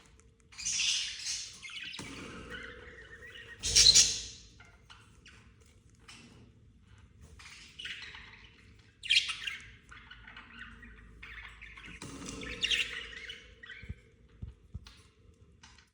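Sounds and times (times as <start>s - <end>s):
budgerigars squawking and chattering: 0.6s - 4.6s, 7.4s - 14.0s.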